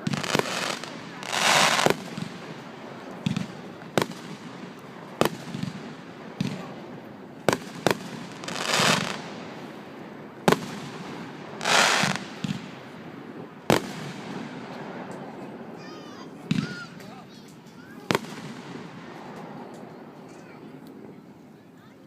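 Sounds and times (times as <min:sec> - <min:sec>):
fireworks hissing: 0:00.0 - 0:06.6, 0:07.5 - 0:09.6, 0:10.5 - 0:12.7
fireworks bangs: 0:00.0 - 0:15.7, 0:16.4 - 0:17.2, 0:18.0 - 0:20.1.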